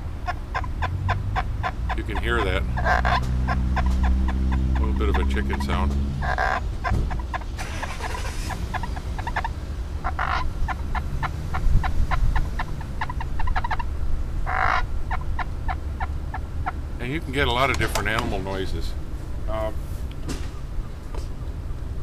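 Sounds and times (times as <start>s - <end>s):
friction call squeaking clucks: 0.0s - 18.7s
wind rumble on microphone: 9.8s - 16.3s.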